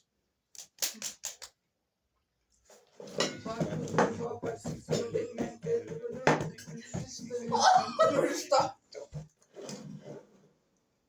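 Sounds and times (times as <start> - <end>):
cutlery clinking against dishes: 3.1 - 4.2
din of voices: 3.3 - 9.2.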